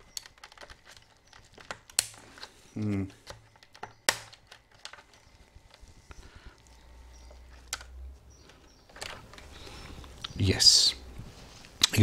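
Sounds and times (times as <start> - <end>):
plastic keycap clicks and scrapes: 3.2 - 5.9.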